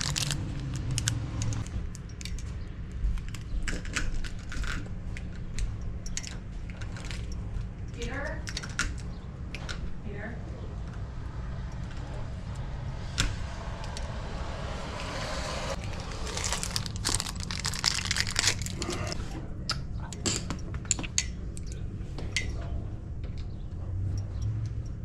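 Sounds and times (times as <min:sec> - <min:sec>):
material crinkling and rustling: 0:00.0 - 0:01.1, 0:15.8 - 0:19.2.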